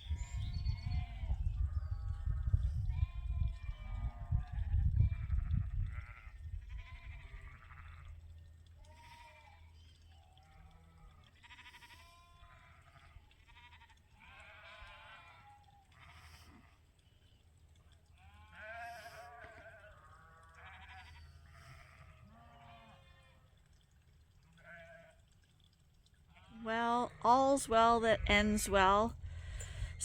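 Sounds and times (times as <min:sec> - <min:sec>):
sheep bleating: 0:02.9 - 0:08.1, 0:10.5 - 0:16.8, 0:18.2 - 0:23.5, 0:24.6 - 0:25.2
heavy low rumble: 0:29.1 - 0:30.0.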